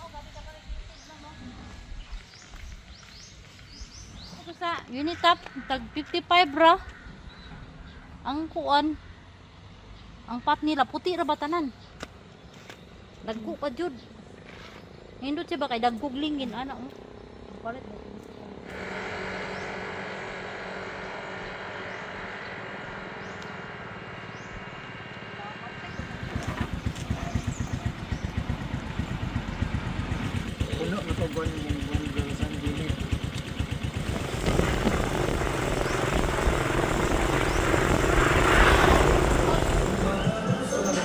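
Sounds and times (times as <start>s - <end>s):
vehicle engine humming: 16.1s - 40.4s.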